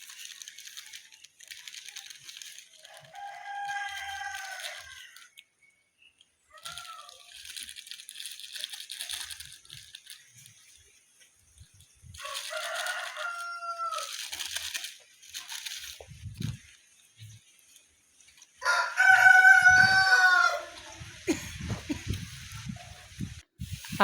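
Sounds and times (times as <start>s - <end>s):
rooster crowing: 2.8s - 5.3s, 12.2s - 14.4s, 18.6s - 20.9s
high hiss: 18.9s - 24.0s.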